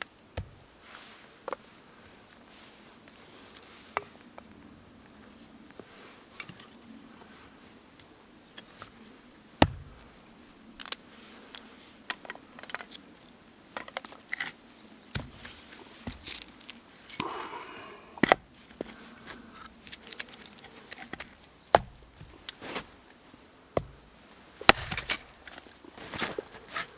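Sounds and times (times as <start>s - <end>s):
sharp knocks: 0.4s - 0.7s, 9.6s - 10.1s, 24.7s - 25.2s
objects handled clicking and crinkling: 10.8s - 14.6s, 15.2s - 17.3s, 18.2s - 23.2s.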